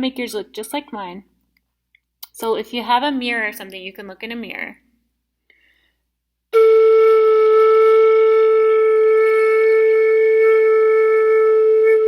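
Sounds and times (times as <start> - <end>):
breath noise: 5.4 - 6.2
flute long steady tone: 6.5 - 12.0.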